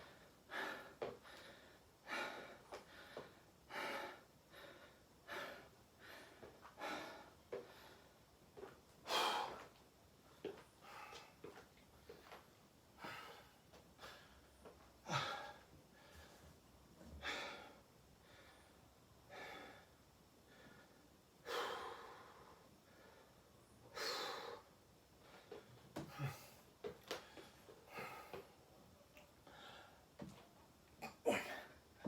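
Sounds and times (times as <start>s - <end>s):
man breathing heavily: 0.0s - 30.3s, 31.2s - 32.0s.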